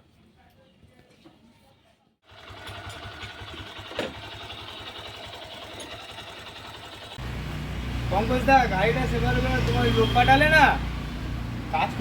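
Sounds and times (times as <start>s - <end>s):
motorcycle engine idling: 2.2s - 9.4s.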